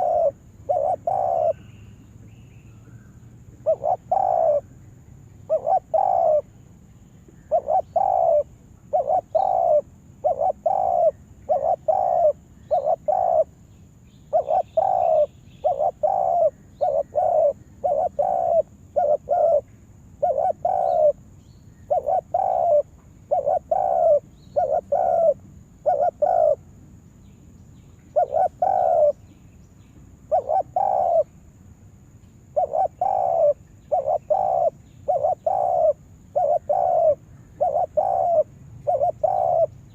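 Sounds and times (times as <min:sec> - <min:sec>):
dove cooing: 0:00.0 - 0:01.7, 0:03.6 - 0:04.8, 0:05.5 - 0:06.5, 0:07.4 - 0:13.6, 0:14.3 - 0:26.6, 0:28.1 - 0:29.2, 0:30.3 - 0:31.3, 0:32.5 - 0:39.9.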